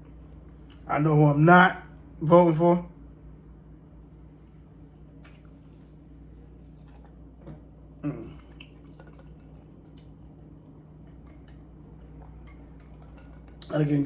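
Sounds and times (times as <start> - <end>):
low hum: 0.0 - 14.0
person chewing food: 6.4 - 13.8.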